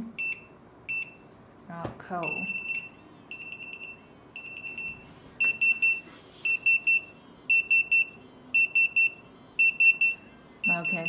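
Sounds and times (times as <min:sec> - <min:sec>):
pager beeping: 0:02.2 - 0:11.0.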